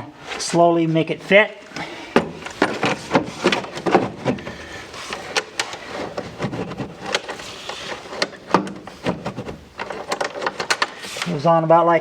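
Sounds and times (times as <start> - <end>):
plastic box knocking and scraping: 1.7 - 11.2.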